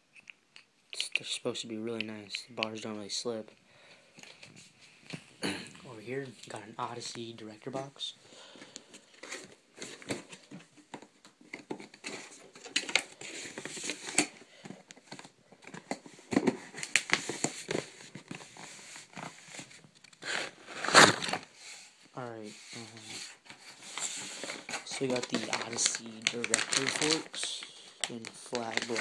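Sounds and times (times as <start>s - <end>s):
packing rustling and tearing: 8.7s - 21.6s, 22.7s - 29.0s
cardboard box being opened: 24.0s - 27.3s.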